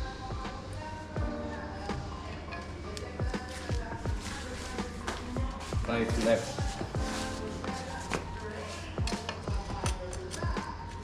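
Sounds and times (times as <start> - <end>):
thudding kick drum: 0.0 - 0.6, 1.2 - 2.1, 5.4 - 7.2.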